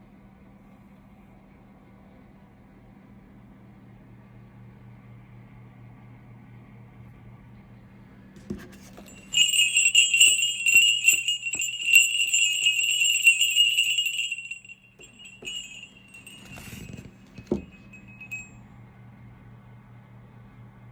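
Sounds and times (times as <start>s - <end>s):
sleigh bells jingling: 8.5s - 18.5s.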